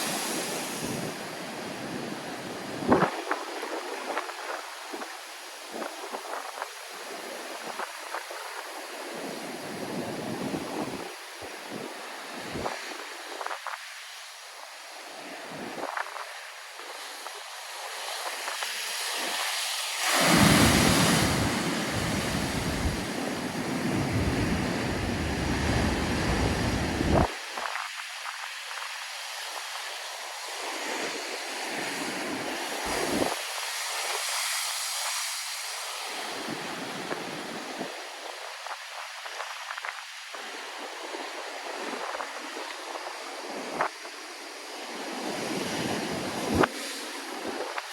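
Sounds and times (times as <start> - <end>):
storm waves breaking: 20.0 - 27.9, 32.8 - 33.4
booming wave crash: 20.1 - 27.3.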